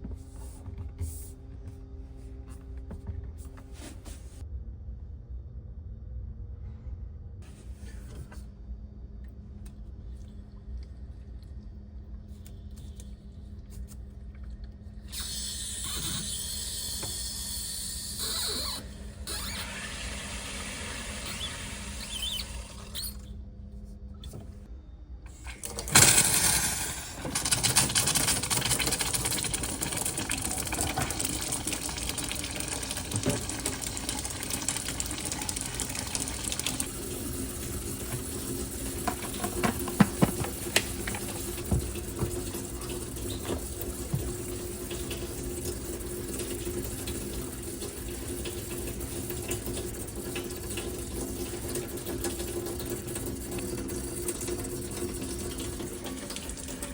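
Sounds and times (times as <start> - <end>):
hissing squeal: 15.2 - 20.1, 21.0 - 23.3
water rushing through tap: 18.2 - 23.2, 25.6 - 56.9.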